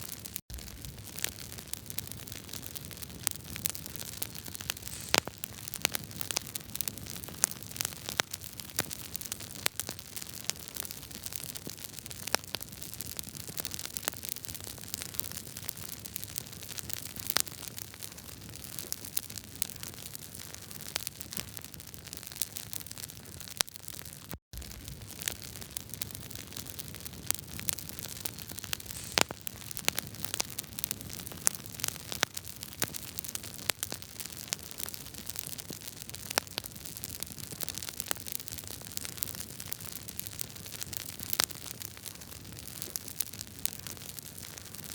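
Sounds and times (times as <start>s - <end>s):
wood fire crackling: 0.1s - 24.0s, 24.6s - 44.9s
burning logs popping and snapping: 0.5s - 11.4s, 24.6s - 44.8s.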